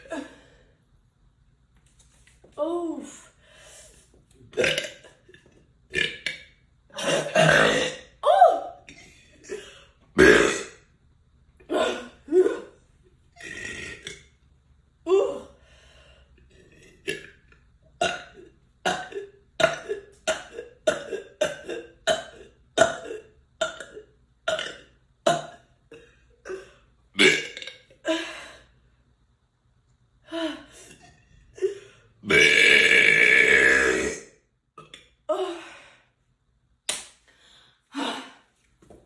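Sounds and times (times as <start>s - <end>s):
person burping: 4.5s - 8.2s, 9.4s - 10.9s, 11.6s - 12.8s, 13.4s - 14.4s, 16.6s - 28.2s, 30.9s - 35.0s.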